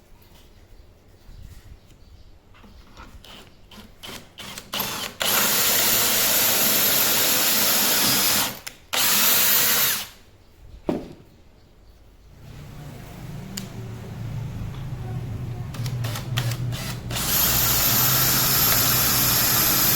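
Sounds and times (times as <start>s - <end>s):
power tool running: 4.7s - 10.2s, 15.7s - 19.9s.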